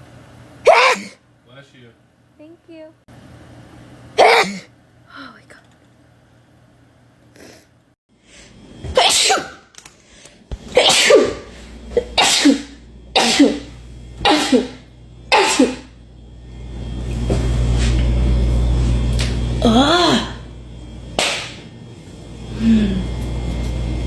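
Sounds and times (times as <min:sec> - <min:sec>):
person sneezing: 0:00.7 - 0:01.2, 0:04.2 - 0:04.7, 0:08.9 - 0:09.6, 0:10.7 - 0:15.9.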